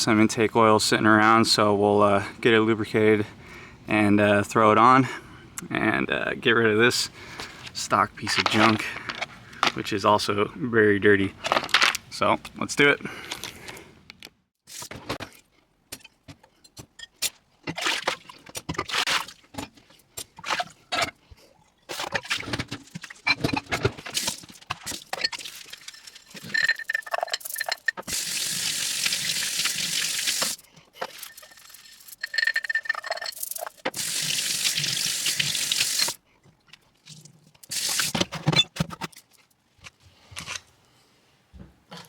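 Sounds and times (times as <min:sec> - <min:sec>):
clicks and clinks of parts: 0:11.4 - 0:12.6, 0:23.3 - 0:28.1, 0:30.5 - 0:34.0
water running: 0:28.1 - 0:30.6, 0:33.9 - 0:36.2.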